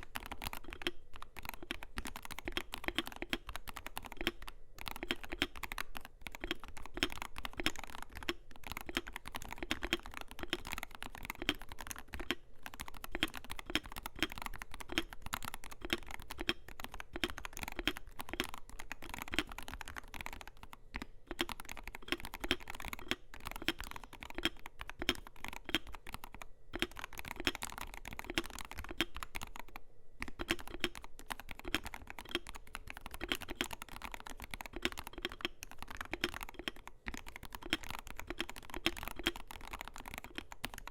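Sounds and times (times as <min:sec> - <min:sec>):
fast typing on keyboard: 0:00.0 - 0:40.9.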